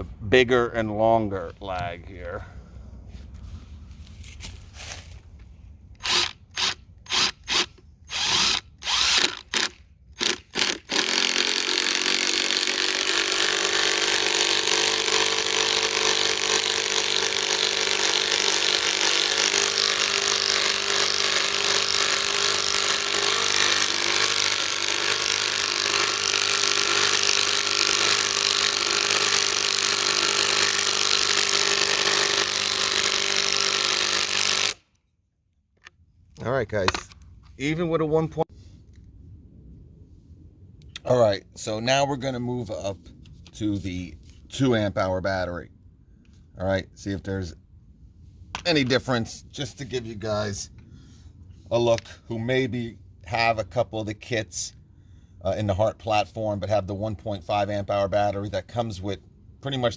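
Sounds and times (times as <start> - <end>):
impact wrench hammering: 9.1 - 34.8.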